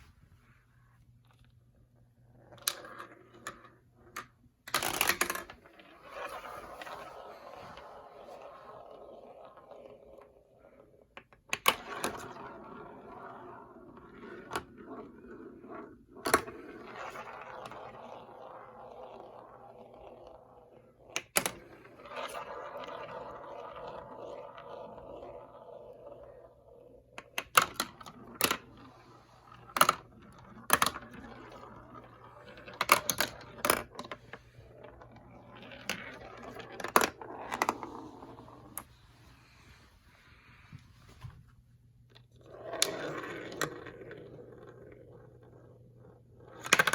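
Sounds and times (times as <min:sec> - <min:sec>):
marbles rolling on plastic track: 0:02.3 - 0:38.9, 0:42.1 - 0:46.9
marbles clacking: 0:16.2 - 0:38.9.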